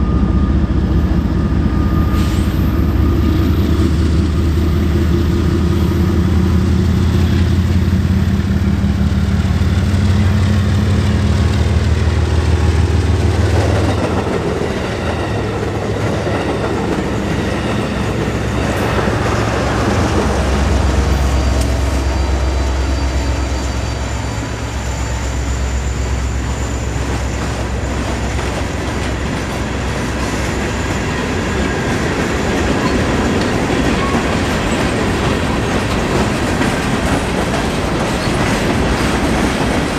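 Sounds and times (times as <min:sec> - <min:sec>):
locomotive engine hum: 0:00.0 - 0:39.9
train wheels clattering over rails: 0:05.8 - 0:22.8, 0:26.3 - 0:39.9.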